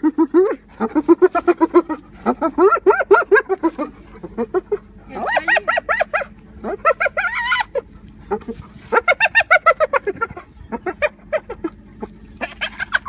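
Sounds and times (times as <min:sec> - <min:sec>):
hyena giggling yelps: 0:00.0 - 0:13.0.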